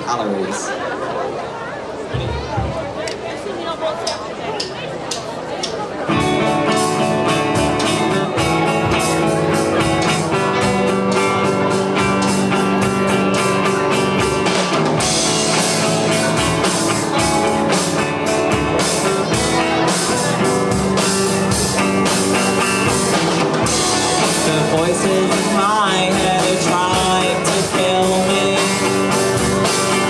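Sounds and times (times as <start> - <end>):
drum kit steady beat: 2.1 - 3.3, 4.0 - 30.0
electric guitar: 6.1 - 30.0.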